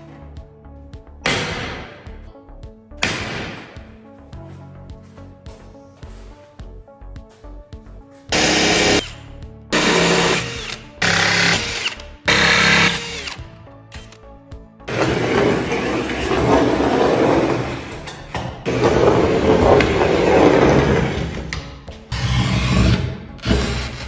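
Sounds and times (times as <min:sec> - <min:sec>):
background music: 0:00.0 - 0:24.0
power tool cutting tile: 0:08.4 - 0:09.2, 0:09.8 - 0:13.4, 0:14.9 - 0:24.0.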